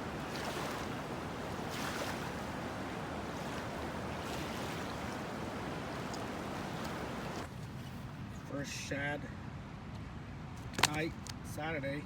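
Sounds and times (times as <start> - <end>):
waves washing in: 0.0 - 7.5
wind on microphone: 0.0 - 7.5.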